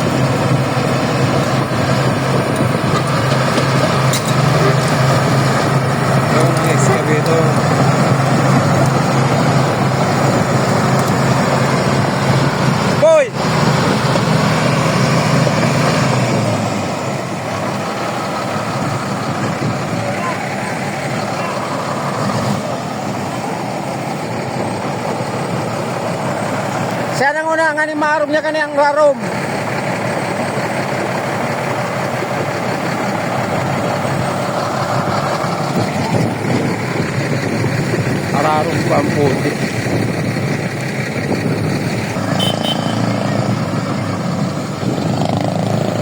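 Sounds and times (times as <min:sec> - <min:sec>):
heavy engine humming: 0:00.0 - 0:46.0.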